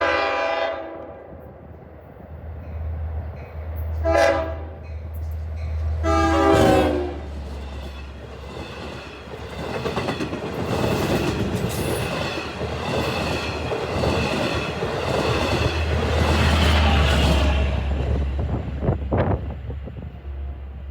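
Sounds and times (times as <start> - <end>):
train horn blasts: 0.0 - 1.4, 4.0 - 4.8, 6.0 - 7.3
train rumbling through station: 0.0 - 20.9.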